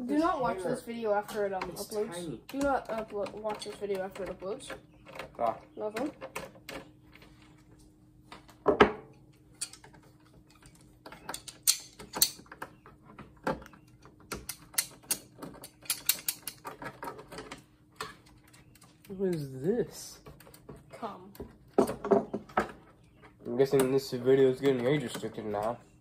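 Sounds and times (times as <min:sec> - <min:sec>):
hand tools clicking on plastic: 0:02.4 - 0:07.0, 0:09.6 - 0:19.4, 0:23.7 - 0:25.8.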